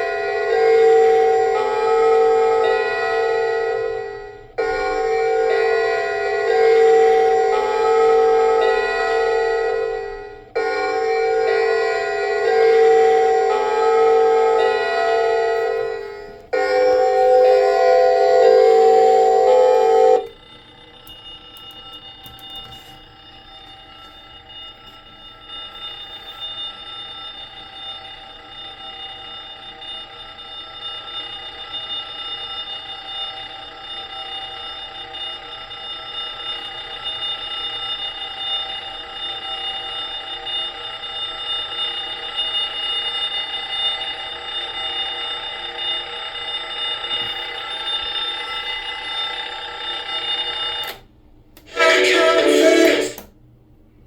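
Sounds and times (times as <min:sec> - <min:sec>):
electronic alarm clock tone: 0:00.0 - 0:51.0, 0:51.7 - 0:53.2
music: 0:51.7 - 0:53.3.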